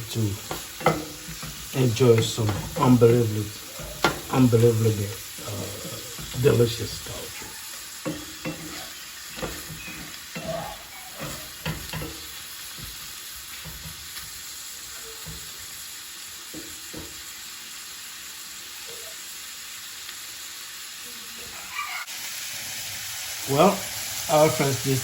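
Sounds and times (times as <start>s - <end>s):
shrimp sizzling in a pan: 0.0s - 25.0s
utensil knocking in a pan: 0.4s - 3.2s, 3.8s - 4.5s, 8.0s - 10.6s, 11.2s - 14.3s.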